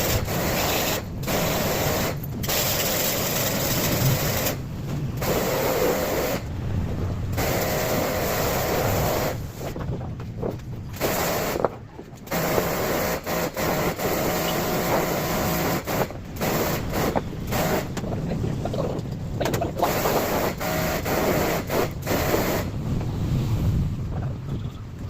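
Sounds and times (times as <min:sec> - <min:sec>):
pressure washer spraying: 0:00.0 - 0:04.6, 0:05.2 - 0:06.5, 0:07.3 - 0:09.7, 0:11.0 - 0:11.6, 0:12.3 - 0:18.0, 0:19.8 - 0:22.8.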